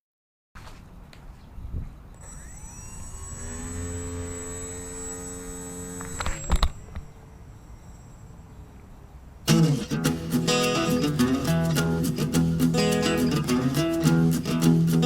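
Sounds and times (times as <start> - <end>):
electric motor whining: 2.2 - 8.2
guitar music: 9.5 - 15.0.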